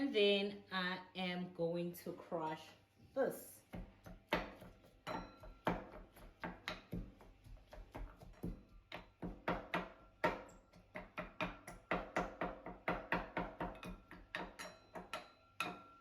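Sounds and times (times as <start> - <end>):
glass ringing: 14.6 - 16.0.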